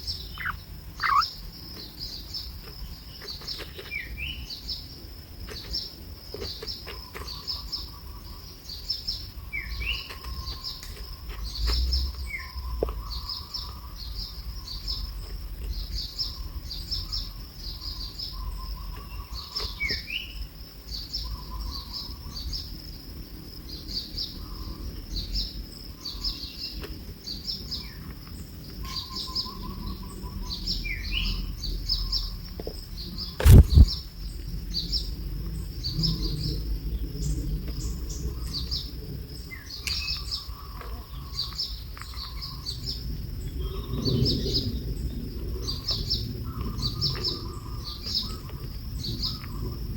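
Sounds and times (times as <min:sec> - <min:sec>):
birds chirping: 0:00.0 - 0:49.9
lower warbling bird call: 0:00.3 - 0:01.4
loud thump: 0:33.4 - 0:34.0.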